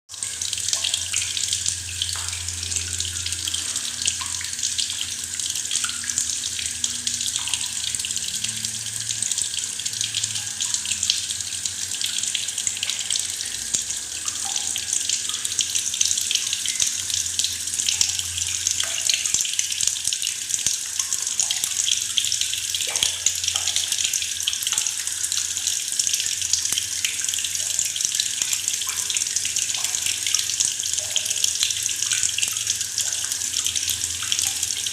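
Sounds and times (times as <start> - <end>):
tap water running into bucket: 0.1 - 34.9.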